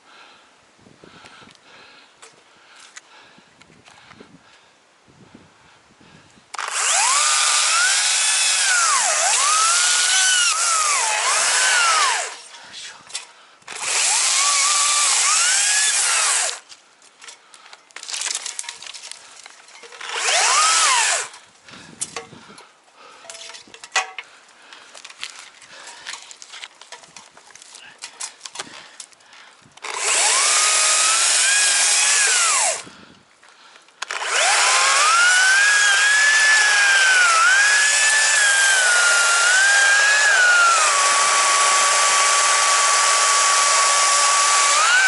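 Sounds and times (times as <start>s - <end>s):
chainsaw cutting tree trunk: 6.6s - 12.5s, 13.7s - 16.6s, 19.9s - 21.4s, 29.8s - 32.8s, 34.0s - 45.0s.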